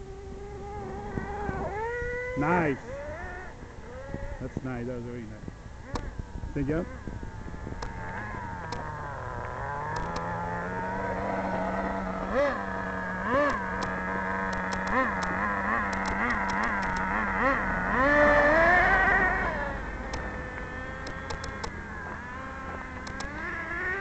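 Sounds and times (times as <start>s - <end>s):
toy truck motor buzzing: 0.0s - 4.4s, 5.8s - 24.0s.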